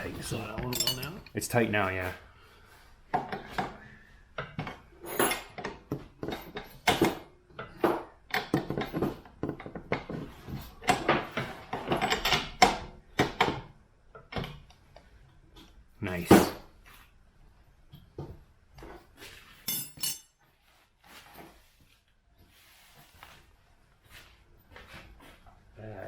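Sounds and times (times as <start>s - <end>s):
tools clinking against steel: 0.5s - 1.4s, 19.6s - 20.4s.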